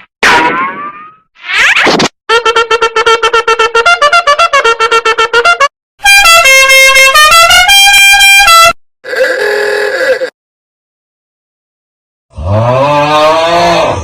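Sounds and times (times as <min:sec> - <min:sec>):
harsh horn tune: 0:02.3 - 0:09.9.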